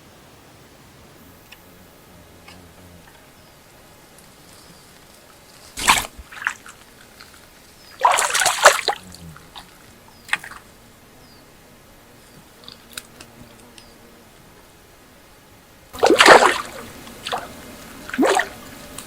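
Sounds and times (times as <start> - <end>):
faint ticks: 1.2 - 8.0, 8.8 - 10.7, 12.2 - 14.5, 16.8 - 19.0
water splashing: 5.7 - 10.7, 16.0 - 19.0.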